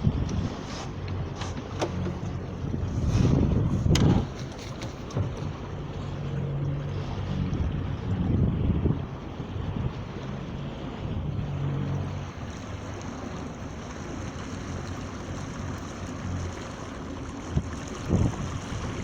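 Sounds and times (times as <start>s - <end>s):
wind on microphone: 0.0s - 5.5s, 6.8s - 12.3s, 17.4s - 19.0s
water washing along hull: 0.0s - 19.0s.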